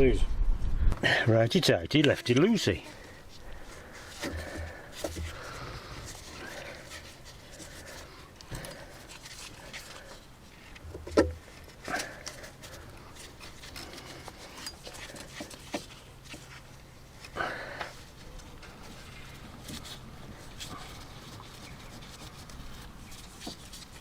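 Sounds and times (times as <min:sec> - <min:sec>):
heavy breathing: 0:02.8 - 0:10.6, 0:11.4 - 0:15.6, 0:17.2 - 0:18.2.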